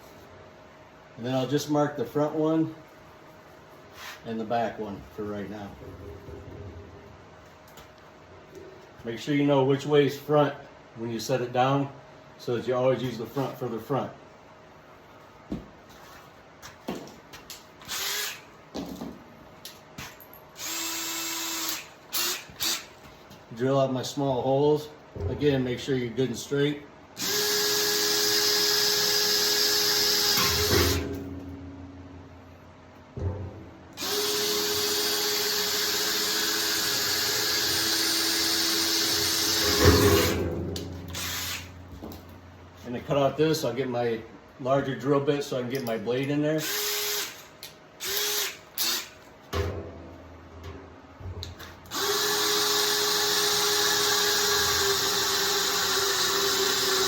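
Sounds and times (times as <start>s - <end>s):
power drill running: 17.8s - 18.5s, 20.6s - 22.9s, 27.2s - 31.2s, 34.0s - 40.4s, 41.1s - 41.7s, 46.6s - 47.4s, 48.0s - 49.1s, 51.9s - 57.0s.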